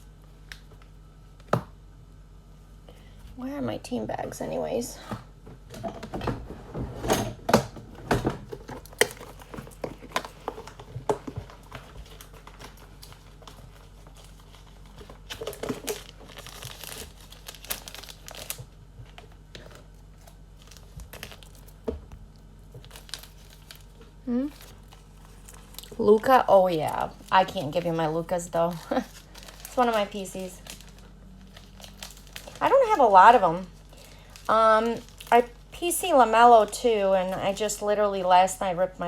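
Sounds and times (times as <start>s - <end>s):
plastic sleeves crinkling: 8.4s - 37.9s.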